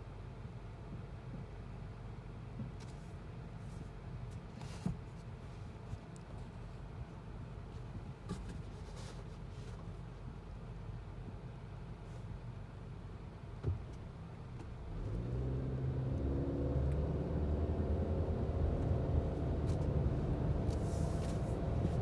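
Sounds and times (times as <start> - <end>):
road rumble: 13.5 - 22.0
car engine: 14.7 - 22.0.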